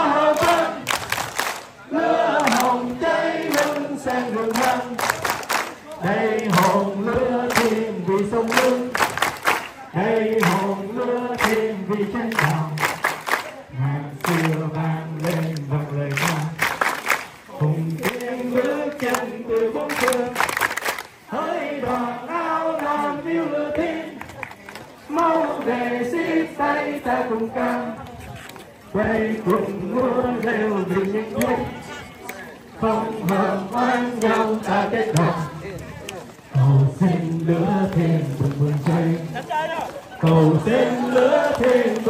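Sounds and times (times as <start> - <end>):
group of people singing: 0.0 - 1.2, 1.8 - 13.0, 13.7 - 16.7, 17.5 - 24.4, 25.1 - 28.3, 28.9 - 35.8, 36.5 - 39.4, 40.1 - 42.0.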